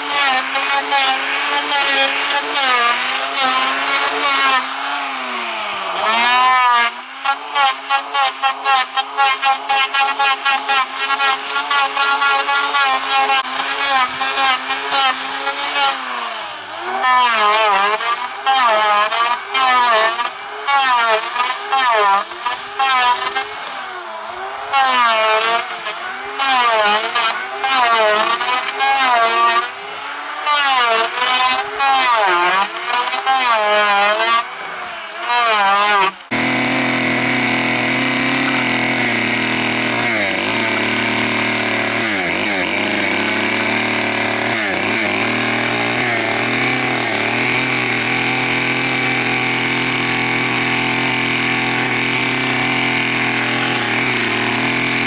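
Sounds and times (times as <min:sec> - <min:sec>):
chainsaw revving: 0:00.0 - 0:55.0
power tool running: 0:00.0 - 0:55.0.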